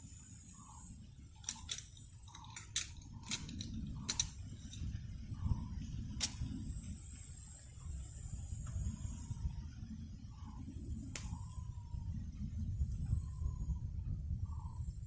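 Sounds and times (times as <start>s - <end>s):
steady low rumble: 0.6s - 15.0s
sharp clicks and cracks: 1.4s - 5.0s, 6.1s - 6.6s, 11.1s - 11.4s.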